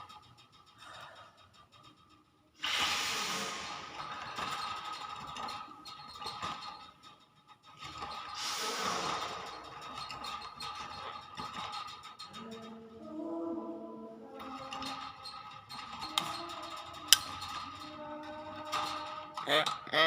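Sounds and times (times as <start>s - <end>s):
myna bird hissing: 2.6s - 4.2s, 8.4s - 9.5s
faint steady tones: 3.3s - 19.9s.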